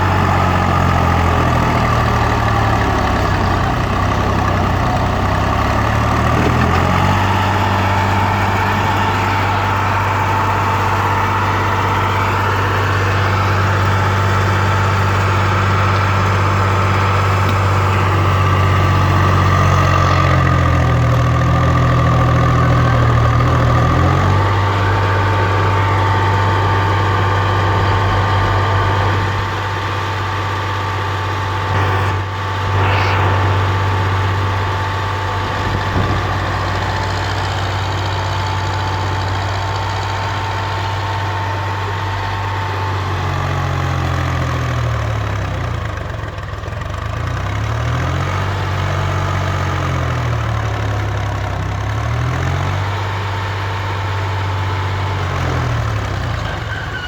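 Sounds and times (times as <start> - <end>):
diesel engine running: 0.0 - 57.0
thin steady whine: 29.0 - 38.2.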